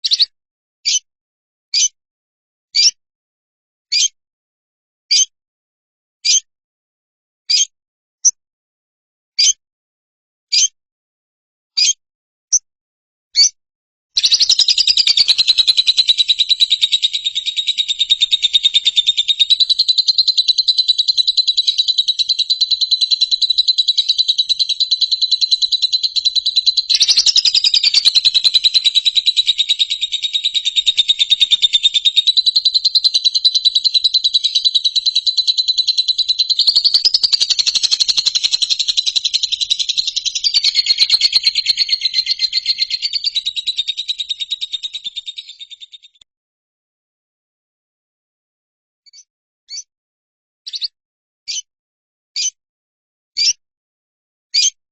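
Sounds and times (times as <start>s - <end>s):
bird chirps: 0.0s - 0.3s, 1.8s - 2.0s, 2.8s - 3.0s, 3.9s - 4.2s, 5.1s - 5.3s, 6.2s - 6.5s, 7.5s - 8.4s, 10.5s - 10.8s, 11.8s - 12.6s, 14.2s - 46.2s, 49.1s - 49.9s, 50.7s - 51.7s, 53.4s - 53.6s, 54.6s - 54.8s
bird buzzing trill: 14.2s - 45.0s.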